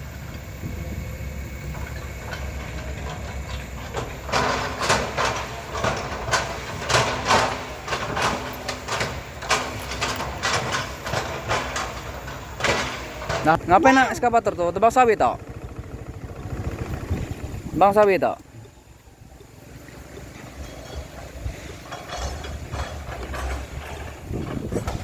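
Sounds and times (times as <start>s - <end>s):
excavator diesel engine running: 0.0s - 25.0s
metallic clanks and squeaks: 1.5s - 15.3s, 20.0s - 25.0s.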